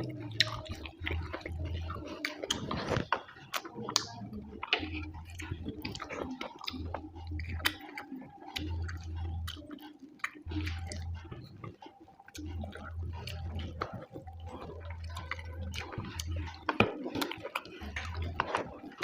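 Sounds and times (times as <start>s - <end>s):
wet chewing and lip-smacking: 0.0s - 19.0s
low hum: 3.9s - 19.0s.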